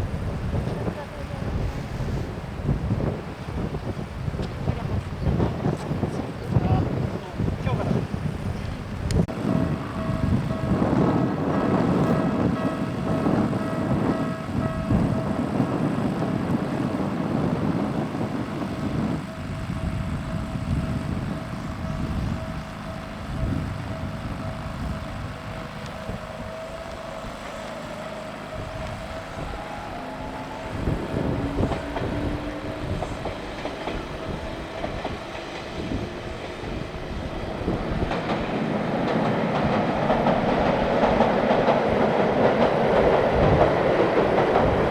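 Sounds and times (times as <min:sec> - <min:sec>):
thin whine: 0:00.0 - 0:44.9
train wheels clattering: 0:25.0 - 0:44.9.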